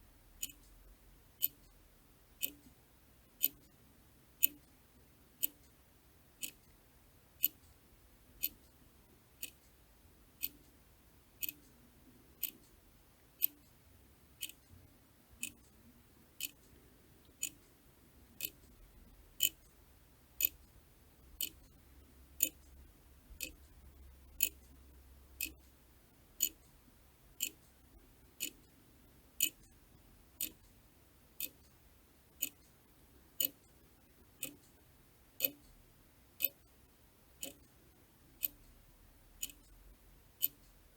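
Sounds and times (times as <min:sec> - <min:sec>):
clock ticking: 0:00.4 - 0:00.7, 0:01.4 - 0:01.8, 0:02.4 - 0:02.7, 0:03.4 - 0:03.7, 0:04.4 - 0:04.6, 0:05.4 - 0:05.7, 0:06.4 - 0:06.6, 0:07.4 - 0:07.7, 0:08.4 - 0:08.7, 0:10.4 - 0:10.7, 0:11.4 - 0:11.7, 0:12.4 - 0:12.8, 0:13.4 - 0:13.7, 0:14.4 - 0:14.7, 0:15.4 - 0:15.7, 0:16.4 - 0:17.6, 0:18.4 - 0:18.8, 0:19.4 - 0:19.8, 0:20.4 - 0:20.7, 0:21.4 - 0:21.8, 0:22.4 - 0:22.8, 0:23.4 - 0:23.8, 0:24.4 - 0:24.8, 0:25.4 - 0:25.7, 0:26.4 - 0:26.7, 0:27.4 - 0:27.8, 0:28.4 - 0:28.7, 0:29.4 - 0:29.8, 0:30.4 - 0:30.7, 0:31.4 - 0:31.7, 0:32.4 - 0:32.6, 0:33.4 - 0:33.7, 0:34.3 - 0:34.8, 0:35.4 - 0:35.8, 0:36.4 - 0:36.7, 0:37.4 - 0:37.7, 0:38.4 - 0:38.8, 0:39.4 - 0:39.8, 0:40.4 - 0:40.8.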